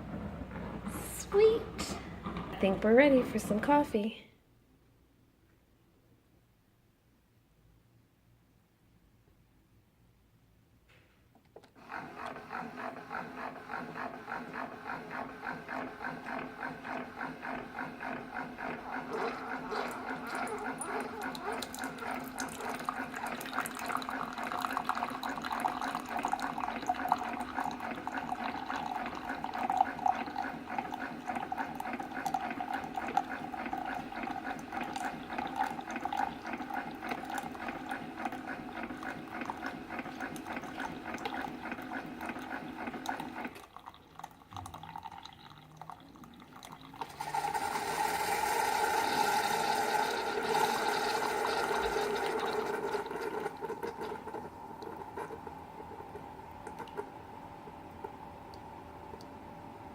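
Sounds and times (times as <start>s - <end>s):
coffee maker pump pulsing: 0.0s - 4.0s, 11.6s - 59.4s
water streaming into cup: 11.9s - 57.1s.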